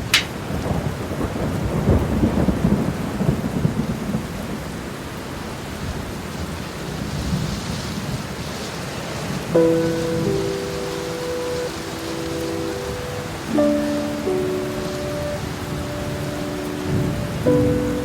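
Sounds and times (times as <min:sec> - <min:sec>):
rolling thunder rumble: 0:00.0 - 0:04.8, 0:05.9 - 0:18.0
steady rain falling: 0:00.0 - 0:18.0.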